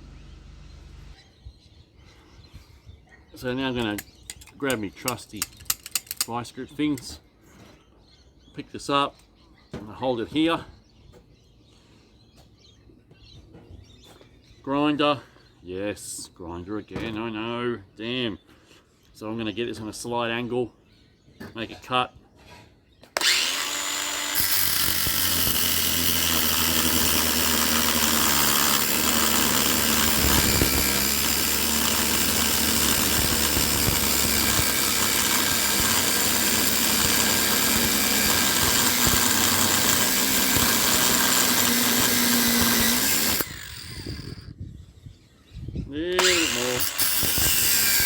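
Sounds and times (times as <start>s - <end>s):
angle grinder cutting metal: 23.2s - 44.5s, 46.2s - 48.0s.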